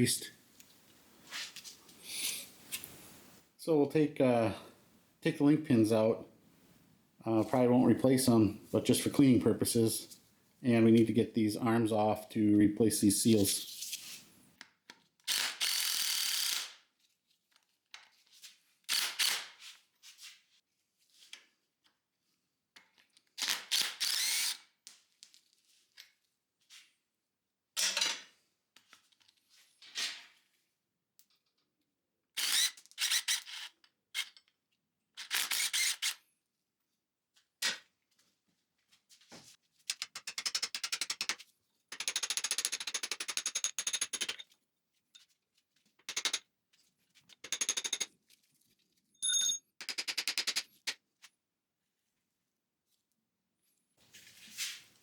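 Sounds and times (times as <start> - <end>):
impact wrench hammering: 42.0 - 44.4, 47.4 - 48.1.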